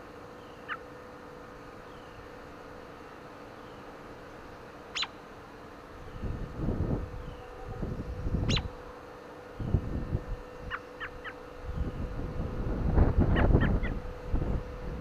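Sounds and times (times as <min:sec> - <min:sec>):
bird chirps: 0:05.0 - 0:05.2
wind buffeting microphone: 0:06.0 - 0:08.8, 0:09.6 - 0:10.8, 0:11.6 - 0:15.0.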